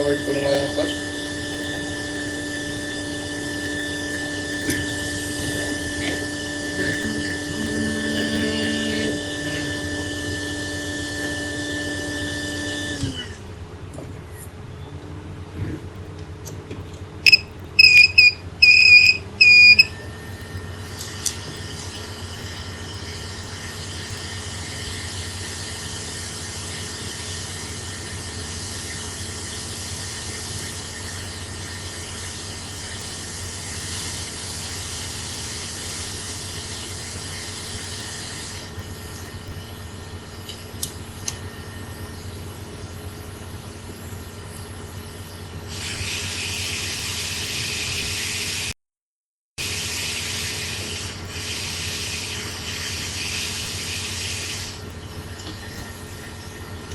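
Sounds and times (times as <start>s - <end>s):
low electrical hum: 0.0s - 48.7s
hiss of blowing air: 22.1s - 39.3s, 45.7s - 48.7s, 49.6s - 54.9s.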